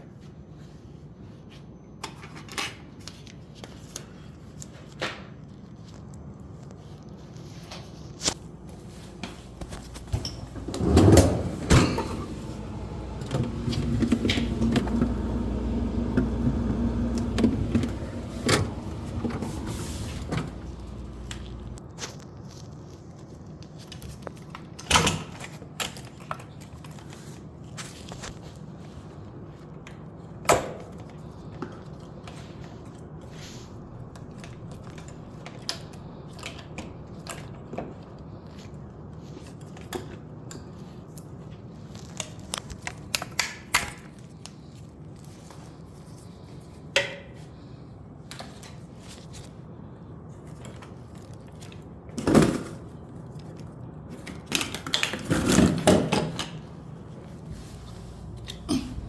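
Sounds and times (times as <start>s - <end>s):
steady low hum: 8.4s - 21.8s, 56.8s - 59.0s.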